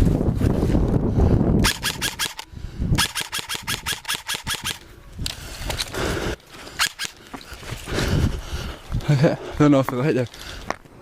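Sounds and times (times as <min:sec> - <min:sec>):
airsoft gun firing: 0:01.6 - 0:02.4.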